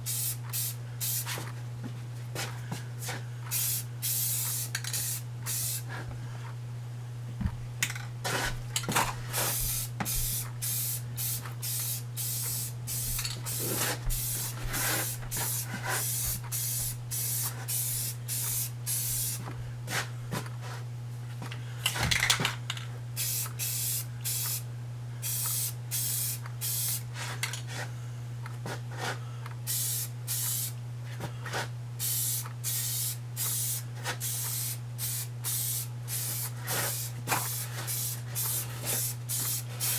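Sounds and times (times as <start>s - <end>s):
steady low hum: 0.0s - 28.6s
spray paint can hissing: 0.1s - 1.4s, 3.5s - 5.8s, 9.5s - 19.4s, 23.2s - 24.6s, 25.2s - 27.0s, 29.7s - 30.7s, 32.0s - 39.9s.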